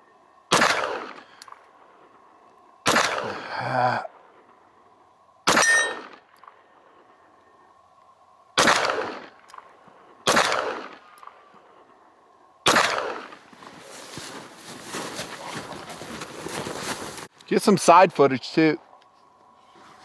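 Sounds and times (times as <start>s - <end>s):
pistol shots with echo: 0.5s - 1.6s, 2.9s - 3.4s, 5.5s - 6.2s, 8.6s - 11.4s, 12.6s - 13.4s
metallic ring: 5.6s - 6.1s.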